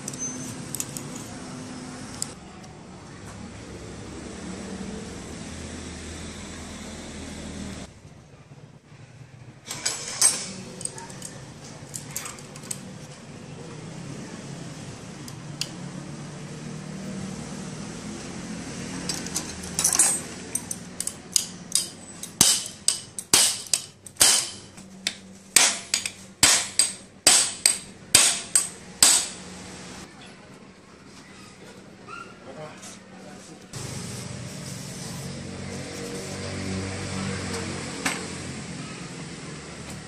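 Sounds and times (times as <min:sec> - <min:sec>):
hammer striking metal: 0:21.0 - 0:24.7, 0:25.6 - 0:29.5.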